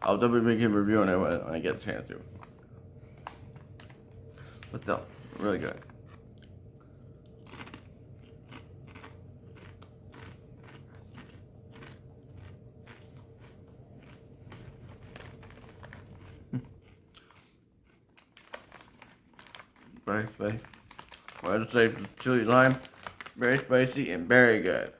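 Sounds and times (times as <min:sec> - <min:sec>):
chips being chewed: 0:05.9 - 0:23.8.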